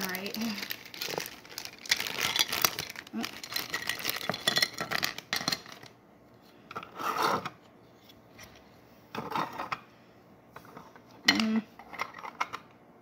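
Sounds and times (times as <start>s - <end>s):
hard plastic pieces scraping: 0.3s - 5.9s.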